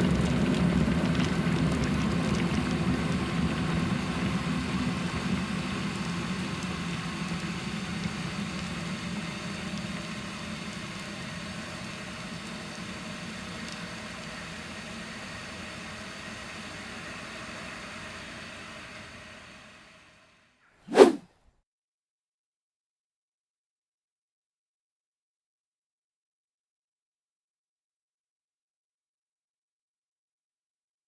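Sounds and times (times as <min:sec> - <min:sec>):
electric kettle boiling: 0:00.0 - 0:20.0.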